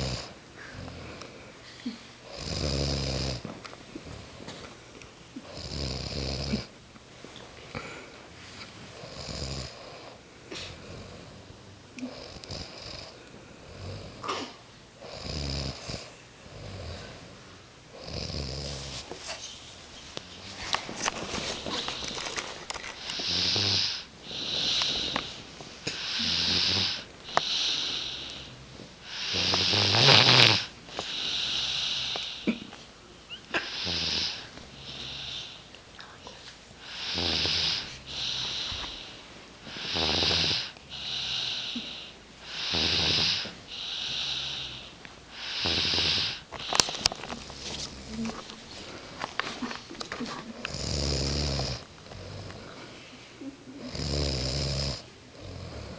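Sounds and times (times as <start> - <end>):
people snoring: 0.0 - 1.3, 2.2 - 3.5, 5.4 - 6.7, 15.0 - 17.2, 18.0 - 19.0, 20.3 - 32.7, 33.4 - 35.7, 36.8 - 49.7, 50.6 - 52.9, 53.8 - 55.9.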